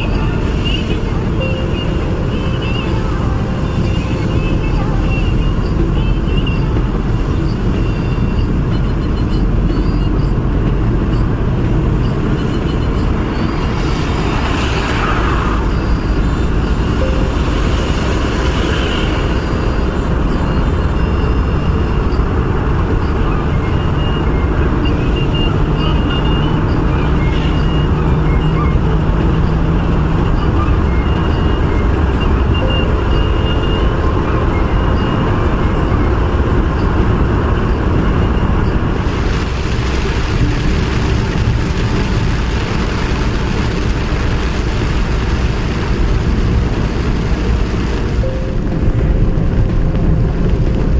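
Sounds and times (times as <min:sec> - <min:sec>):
car driving on highway: 0:00.0 - 0:50.9.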